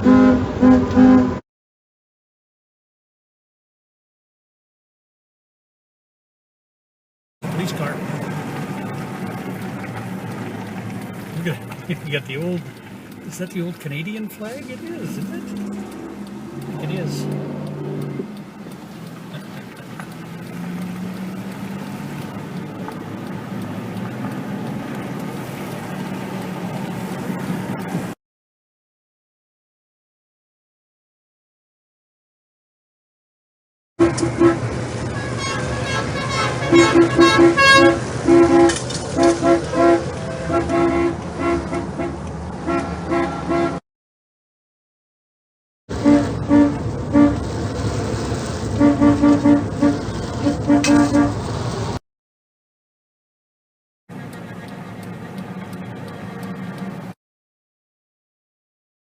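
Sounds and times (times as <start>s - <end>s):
car engine and road noise: 0.0s - 1.4s, 7.4s - 28.2s, 34.0s - 43.8s, 45.9s - 52.0s, 54.1s - 57.2s
vehicle horns honking: 0.0s - 1.4s, 34.0s - 43.8s, 45.9s - 52.0s.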